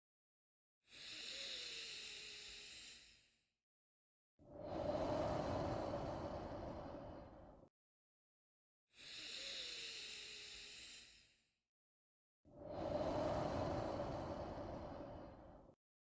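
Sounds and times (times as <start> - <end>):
slow deliberate breathing: 0.9 - 3.4, 4.5 - 7.7, 9.0 - 11.5, 12.5 - 15.8.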